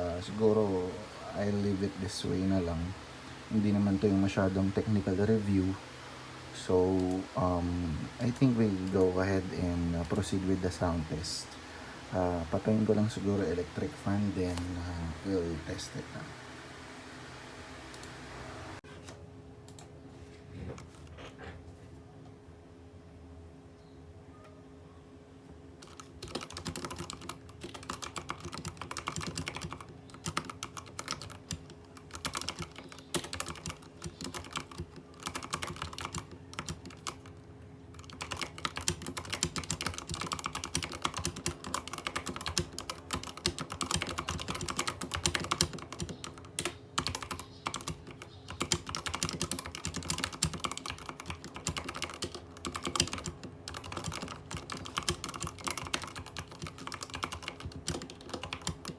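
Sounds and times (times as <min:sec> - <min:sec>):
typing on mechanical keyboard: 0:25.8 - 0:37.3, 0:37.9 - 0:58.9.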